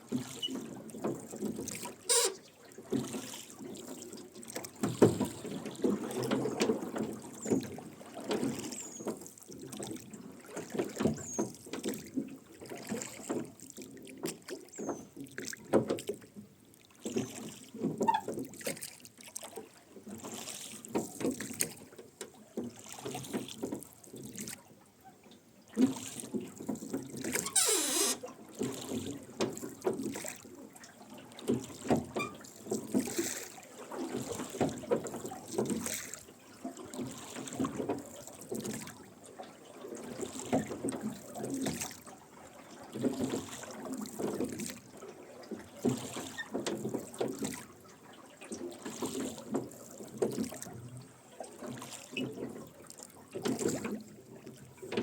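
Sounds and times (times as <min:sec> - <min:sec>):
oars splashing in water: 0:00.0 - 0:55.0
oarlocks creaking: 0:02.1 - 0:02.4, 0:27.4 - 0:28.2.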